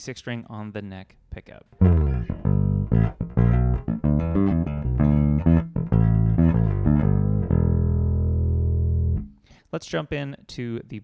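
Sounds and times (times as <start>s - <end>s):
electric bass plucked notes: 1.7s - 9.4s.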